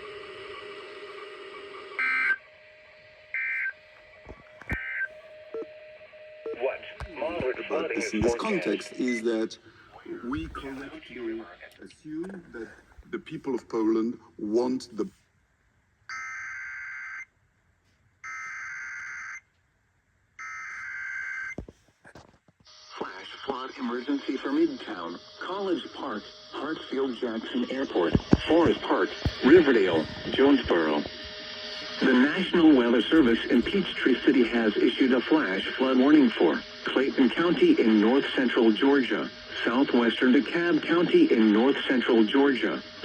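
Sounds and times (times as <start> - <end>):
faint radio hum: 6.5 - 15.2, 22.0 - 43.0
digital warbling data bursts: 22.9 - 43.0.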